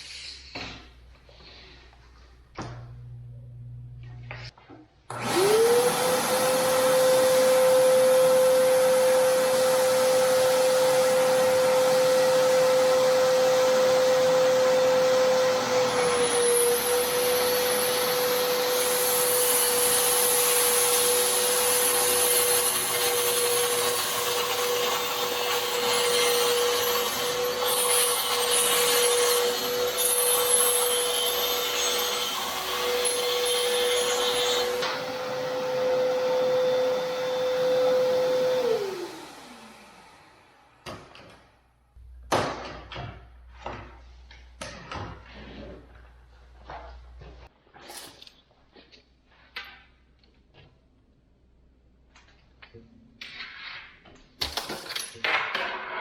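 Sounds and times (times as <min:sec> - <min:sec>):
power tool motor whine: 0:05.1 - 0:40.6.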